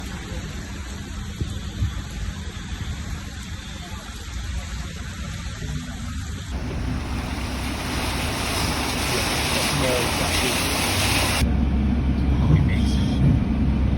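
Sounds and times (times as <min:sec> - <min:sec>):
storm rain and floodwater rushing: 0:06.5 - 0:11.4
low rumble: 0:06.5 - 0:12.5.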